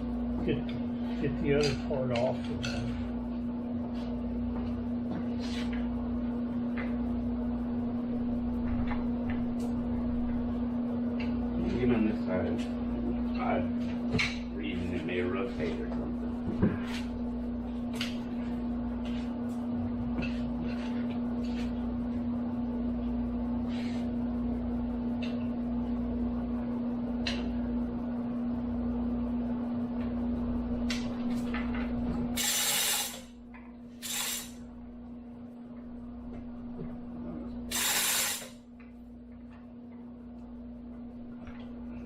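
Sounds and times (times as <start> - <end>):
machine hum: 0.0 - 42.0
short bursts of hissing: 34.0 - 34.6, 37.7 - 38.5.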